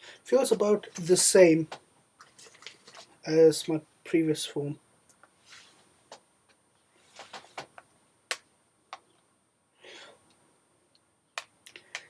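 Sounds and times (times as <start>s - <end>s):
soft rustle: 0.7s - 3.2s, 5.3s - 6.2s, 6.8s - 7.8s.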